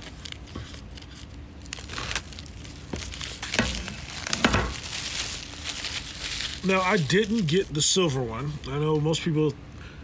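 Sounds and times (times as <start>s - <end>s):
paper strips tearing: 0.0s - 7.7s
wrapping being handled: 0.0s - 8.8s.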